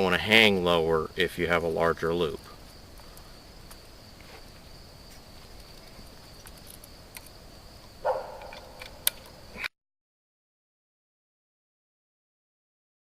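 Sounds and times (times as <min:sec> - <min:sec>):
high insect trill: 0:00.0 - 0:09.7
rustle: 0:00.0 - 0:09.7
sharp click: 0:08.1 - 0:09.7.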